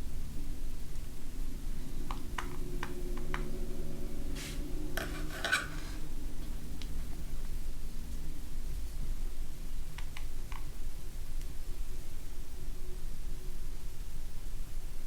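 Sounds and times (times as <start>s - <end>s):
clattering scrape: 4.4s - 6.1s.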